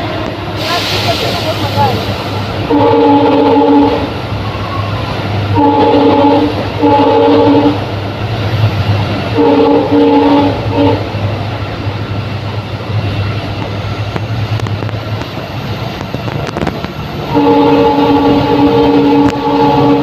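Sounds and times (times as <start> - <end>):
locomotive engine and rail noise: 0.0 - 20.0
locomotive horn: 2.6 - 7.9, 9.3 - 11.2, 17.2 - 20.0.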